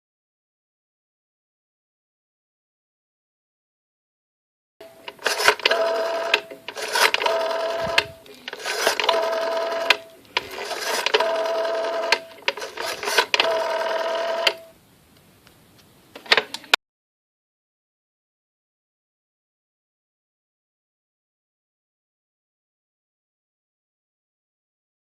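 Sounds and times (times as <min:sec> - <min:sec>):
old telephone ringing: 0:04.8 - 0:14.8.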